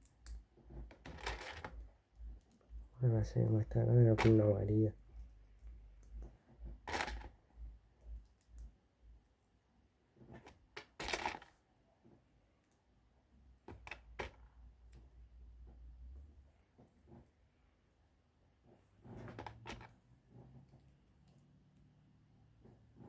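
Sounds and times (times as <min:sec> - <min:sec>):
low steady hum: 0:00.0 - 0:10.2.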